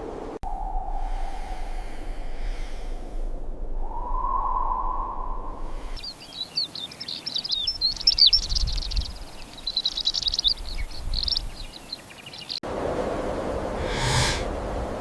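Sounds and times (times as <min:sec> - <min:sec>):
small birds chirping and twittering: 0:05.8 - 0:12.6.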